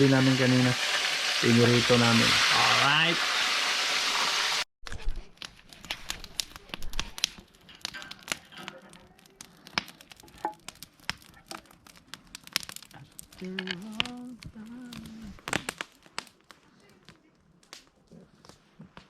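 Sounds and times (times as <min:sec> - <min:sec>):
person speaking: 0:00.0 - 0:00.8, 0:01.4 - 0:03.2, 0:13.4 - 0:15.7
crackling and crinkling clicks: 0:04.9 - 0:19.0.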